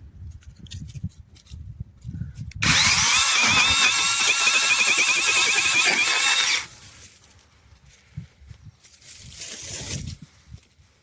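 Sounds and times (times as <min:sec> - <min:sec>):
mini chainsaw cutting branch: 0:02.6 - 0:06.8.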